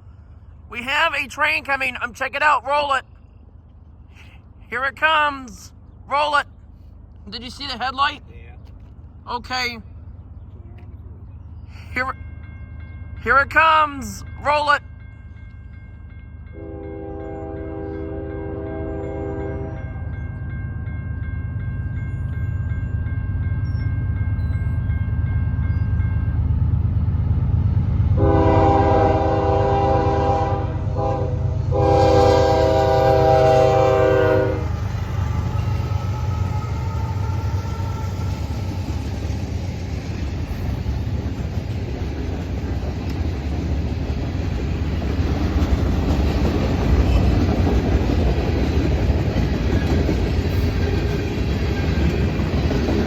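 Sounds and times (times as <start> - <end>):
low train rumble: 0.0 - 53.0
rail noise: 0.0 - 53.0
locomotive air horn blasts: 16.6 - 19.9, 28.2 - 38.3.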